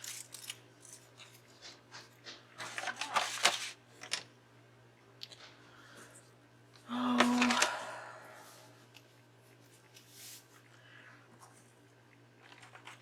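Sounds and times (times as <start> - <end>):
paper rustling and crackling: 1.2 - 3.8.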